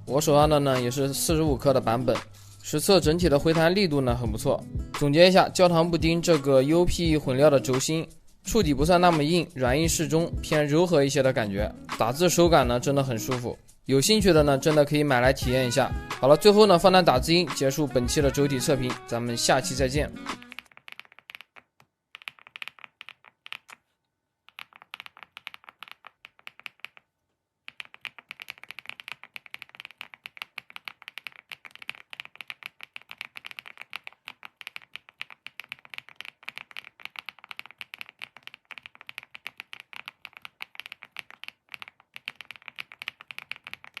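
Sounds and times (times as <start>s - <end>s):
mechanical keyboard typing: 20.4s - 23.8s, 24.5s - 27.1s, 27.7s - 44.0s.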